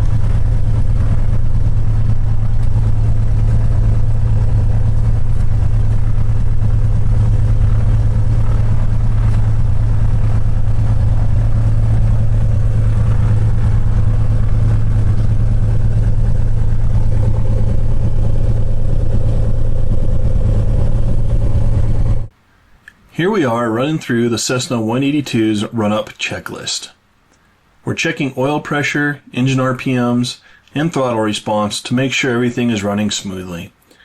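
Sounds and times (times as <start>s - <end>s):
propeller plane engine running: 0.0s - 22.3s.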